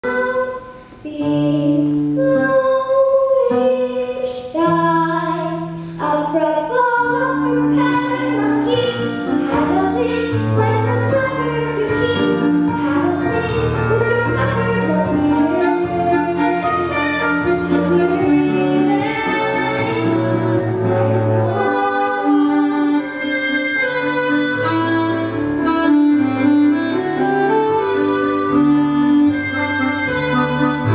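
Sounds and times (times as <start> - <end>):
instrumental accompaniment: 0.0 - 30.9.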